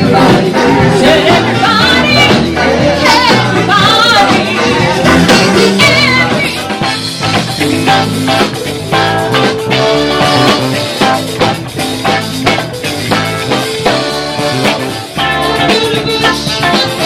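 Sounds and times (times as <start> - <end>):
person singing: 0.0 - 6.6, 15.2 - 17.0
bass: 0.0 - 17.0
drum beat: 0.0 - 17.0
live band playing: 0.0 - 17.0.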